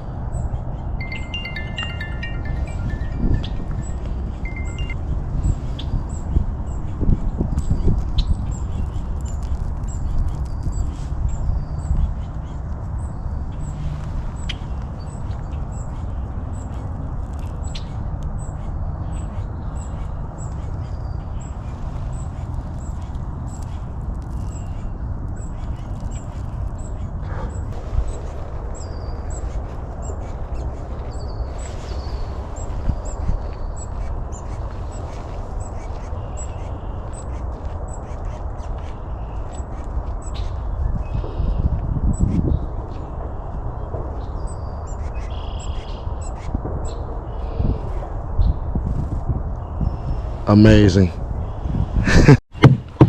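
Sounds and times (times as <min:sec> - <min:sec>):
wind rumble on microphone: 0:00.0 - 0:53.0
small birds chirping: 0:00.3 - 0:43.6
bird calls: 0:00.8 - 0:06.2.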